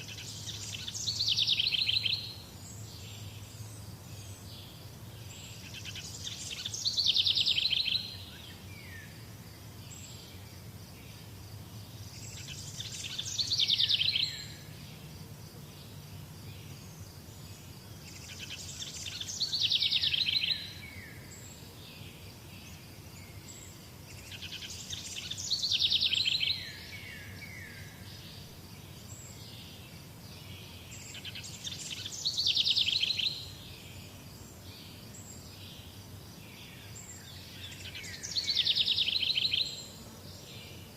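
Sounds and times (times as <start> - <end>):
songbird trilling song: 0.0 - 40.9.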